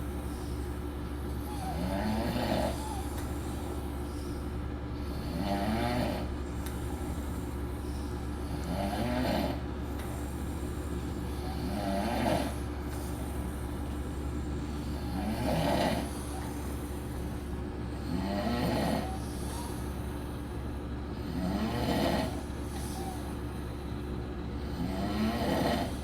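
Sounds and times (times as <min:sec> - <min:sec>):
steady low hum: 0:00.0 - 0:26.0
man snoring: 0:01.5 - 0:03.0, 0:05.0 - 0:07.5, 0:08.4 - 0:19.9, 0:21.1 - 0:23.2, 0:24.6 - 0:26.0.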